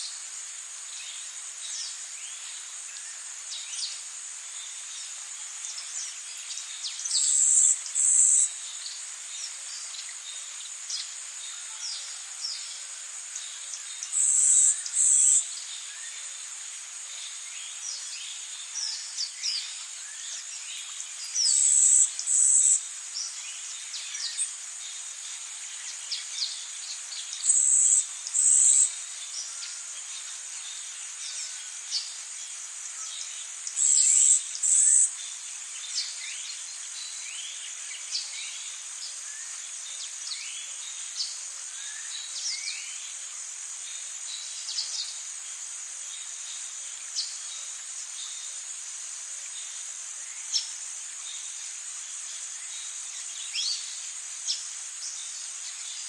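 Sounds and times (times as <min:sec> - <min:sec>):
high-pitched insect drone: 0:07.1 - 0:08.6, 0:25.6 - 0:35.2.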